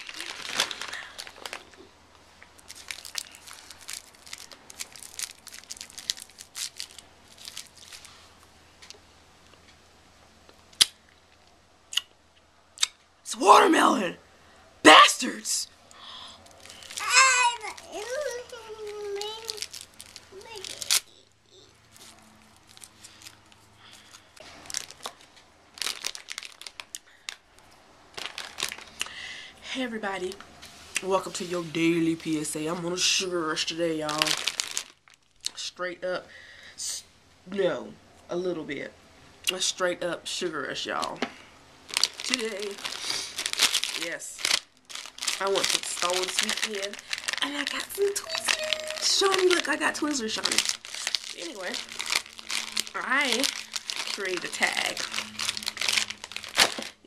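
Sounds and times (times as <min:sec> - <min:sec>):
candy wrapper crinkling: 0:00.0 - 0:09.0, 0:16.4 - 0:29.2, 0:33.0 - 0:35.6, 0:41.9 - 0:57.0.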